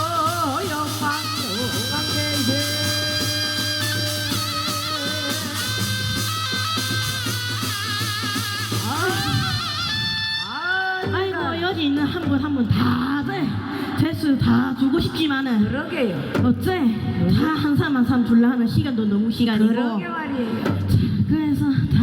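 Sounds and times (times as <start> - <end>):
steady percussion beat: 0.0 - 13.4.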